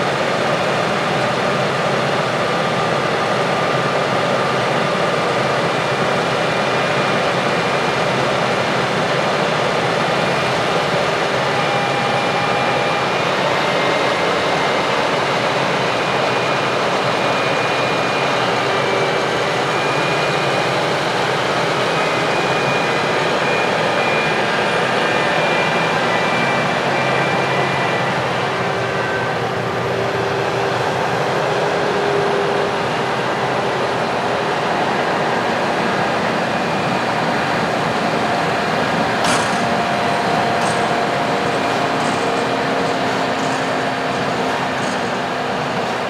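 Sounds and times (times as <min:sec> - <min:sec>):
heavy machine drone: 0:18.4 - 0:46.0.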